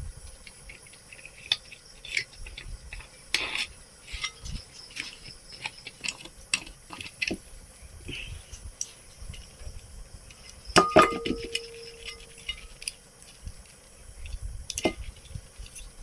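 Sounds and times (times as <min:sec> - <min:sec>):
ringing metal strike: 0:10.8 - 0:12.6
metal parts clinking: 0:10.8 - 0:13.0.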